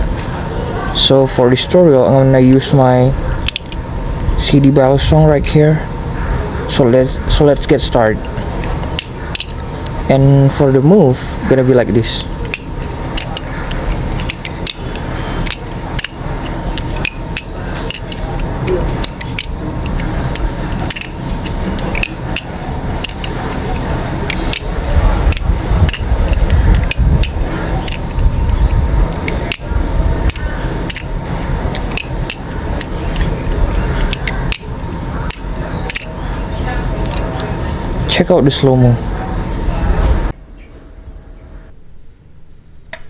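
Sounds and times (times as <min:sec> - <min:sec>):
butterfly knife clicking: 0:03.4 - 0:03.8, 0:12.2 - 0:36.2
low rumble: 0:14.9 - 0:38.1.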